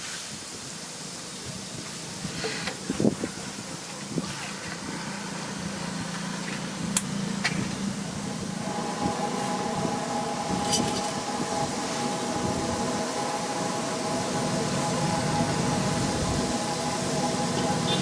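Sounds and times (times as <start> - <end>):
traffic noise: 0.0 - 18.0
steady hum: 3.0 - 18.0
steady droning tone: 3.2 - 18.0.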